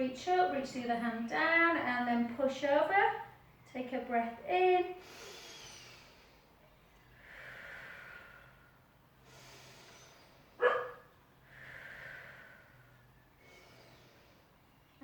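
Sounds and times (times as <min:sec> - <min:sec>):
slow breathing: 0:05.0 - 0:15.0
dog bark: 0:10.6 - 0:11.1.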